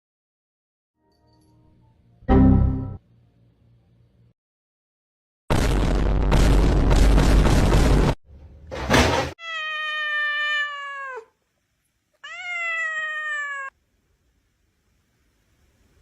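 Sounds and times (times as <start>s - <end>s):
cat meowing: 9.4s - 11.4s, 12.2s - 13.8s.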